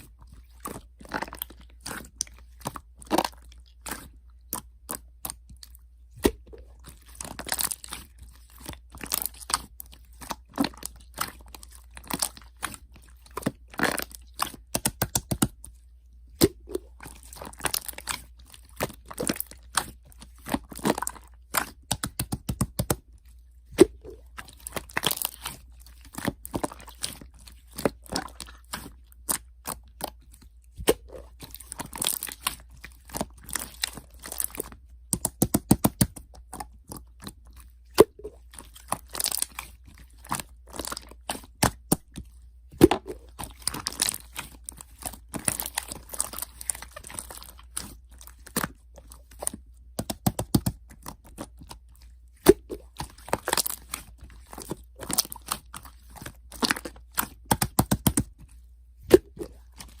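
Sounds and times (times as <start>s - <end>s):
crunching and crinkling clicks: 16.5s - 60.0s.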